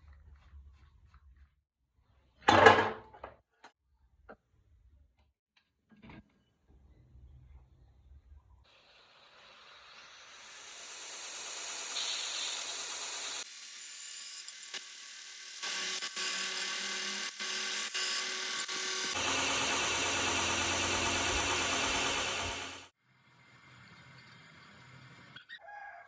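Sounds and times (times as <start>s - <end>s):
power tools machining metal: 10.2s - 22.9s.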